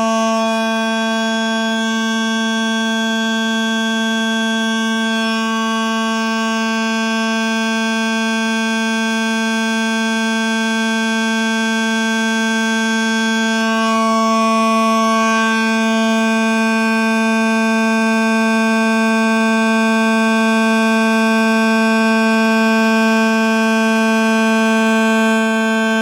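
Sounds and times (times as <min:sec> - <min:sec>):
toy train horn buzzing: 0:00.0 - 0:03.8, 0:13.1 - 0:26.0.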